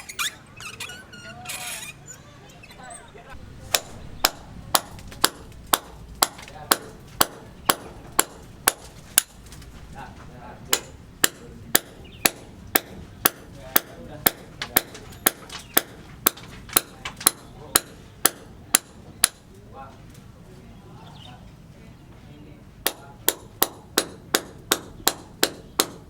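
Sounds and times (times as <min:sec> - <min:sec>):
hammer blows: 0:03.4 - 0:19.5.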